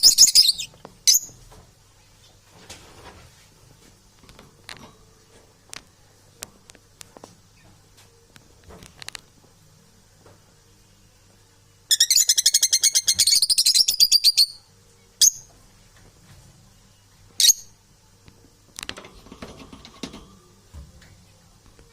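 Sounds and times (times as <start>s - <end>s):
parrot squawks: 11.9s - 14.6s.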